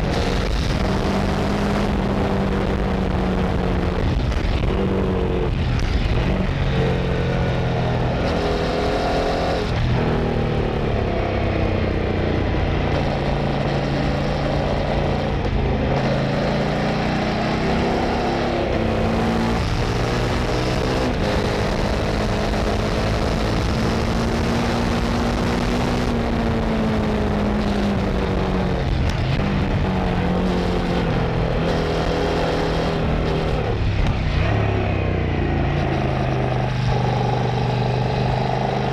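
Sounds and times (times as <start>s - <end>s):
motorcycle engine accelerating: 0.0s - 38.9s
wind noise: 0.0s - 38.9s.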